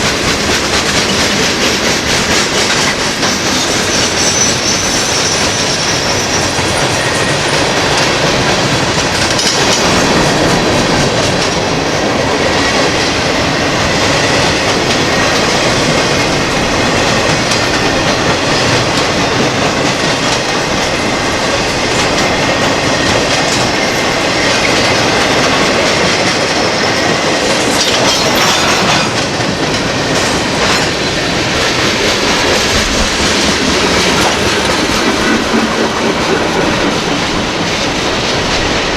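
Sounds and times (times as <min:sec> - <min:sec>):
clickety-clack over rail joints: 0:00.0 - 0:38.9
steel wheels rumbling on rail: 0:00.0 - 0:38.9
high wheel squeal: 0:03.3 - 0:07.8.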